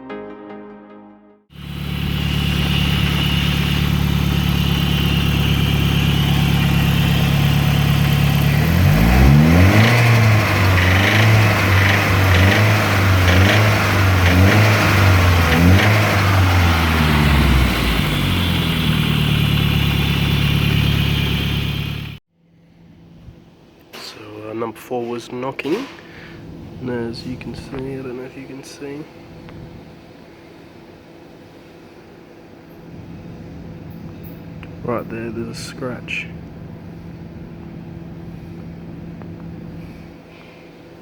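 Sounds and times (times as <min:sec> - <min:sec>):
car engine idling and revving: 0:01.5 - 0:22.2, 0:36.1 - 0:40.3.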